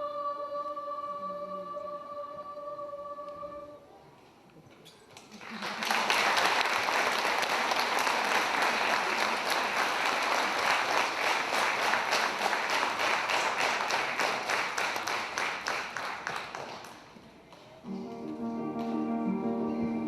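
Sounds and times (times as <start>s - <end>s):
audience applauding: 5.3s - 17.1s.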